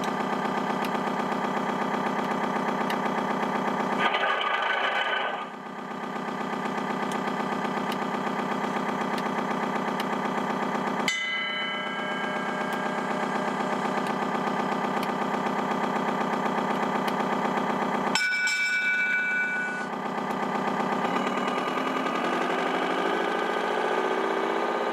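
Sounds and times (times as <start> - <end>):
diesel engine idling: 0.0 - 18.2, 18.8 - 24.9
click: 2.2 - 3.0, 15.0 - 15.2
bell-like ding: 11.1 - 13.0, 18.2 - 19.9.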